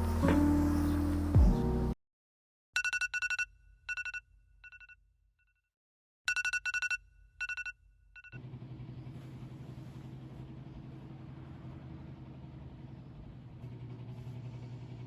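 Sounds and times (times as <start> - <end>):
phone ringtone trilling beeps: 6.3 - 8.4.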